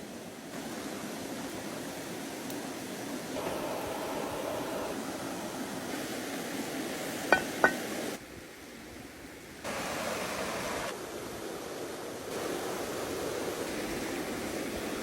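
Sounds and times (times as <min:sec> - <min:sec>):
steady rushing outdoor noise: 0:09.6 - 0:15.0.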